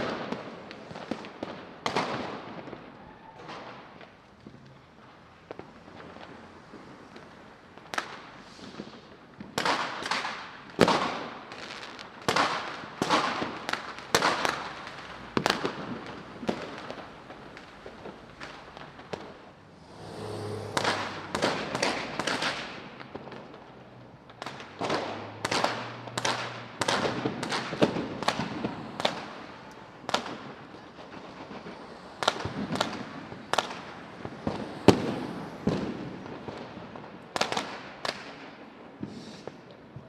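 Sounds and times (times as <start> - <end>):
low steady drone: 19.6 - 22.2
explosion blasts: 19.7 - 22.7.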